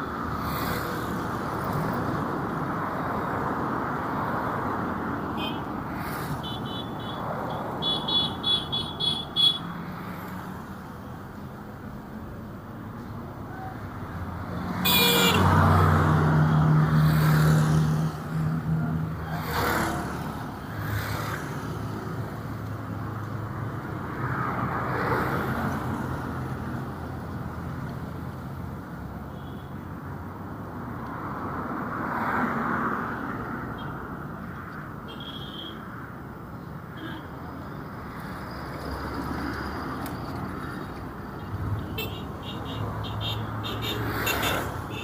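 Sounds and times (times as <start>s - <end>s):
vehicles swishing by: 0.0s - 45.0s.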